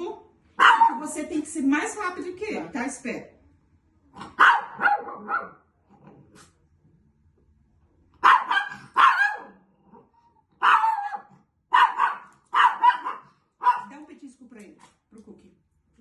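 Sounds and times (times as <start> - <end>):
dog barking: 0.6 - 1.1, 4.2 - 5.7, 8.2 - 10.0, 10.6 - 14.0.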